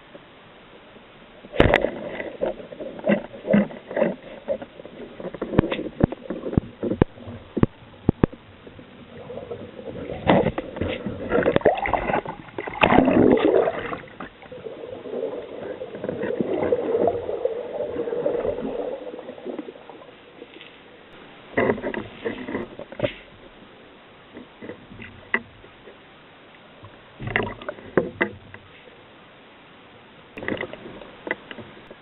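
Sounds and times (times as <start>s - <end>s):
underwater gurgling and rushing water: 0.9s - 26.0s, 26.7s - 28.8s.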